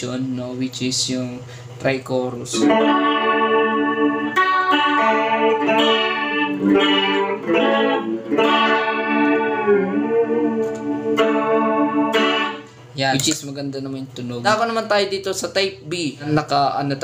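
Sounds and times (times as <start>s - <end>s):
electric guitar chords with chorus: 2.5s - 13.0s.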